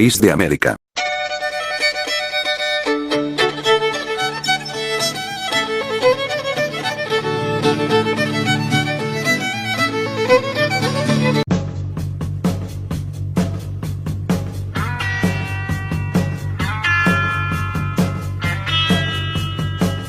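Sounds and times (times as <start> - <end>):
fiddle-led instrumental music: 1.0 - 11.5, 14.7 - 20.0.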